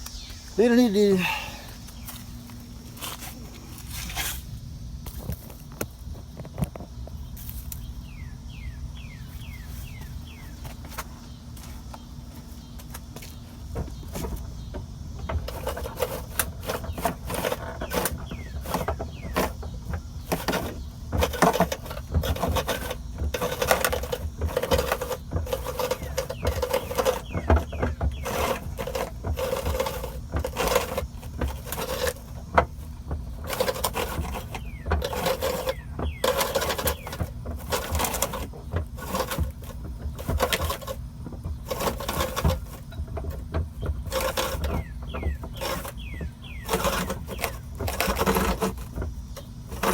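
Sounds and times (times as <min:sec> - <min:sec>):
hand-cranked winch clicking: 0:15.2 - 0:49.9.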